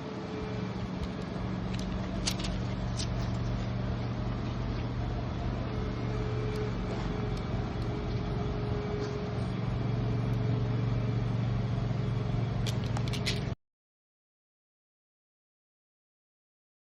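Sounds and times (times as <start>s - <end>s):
low mechanical hum: 0.0s - 13.6s
thin steady whine: 0.0s - 13.6s.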